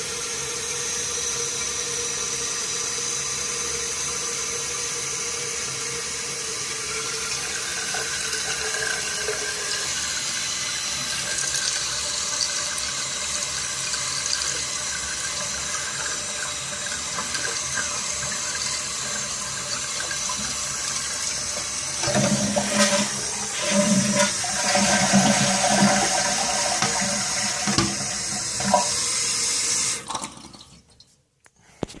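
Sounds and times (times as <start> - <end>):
toilet water hissing: 0.0 - 30.9.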